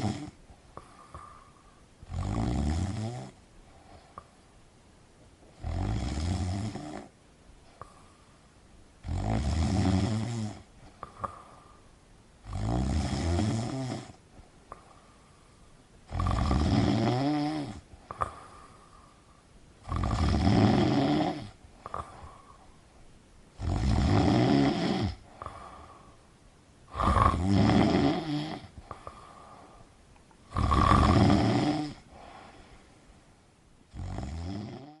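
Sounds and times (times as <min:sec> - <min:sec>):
person snoring: 0:00.0 - 0:04.2, 0:05.6 - 0:07.1, 0:09.0 - 0:11.7, 0:12.4 - 0:14.2, 0:16.1 - 0:18.9, 0:19.8 - 0:22.6, 0:23.6 - 0:26.2, 0:26.9 - 0:29.8, 0:30.5 - 0:32.8, 0:33.9 - 0:35.0
quiet breathing: 0:00.0 - 0:35.0.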